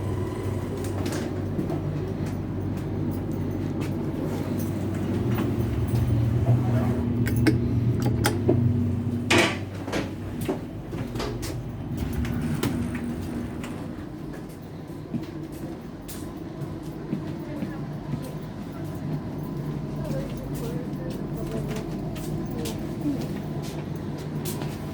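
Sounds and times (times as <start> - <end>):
train humming: 0.0 - 24.2
clicks and knocks: 7.2 - 8.6.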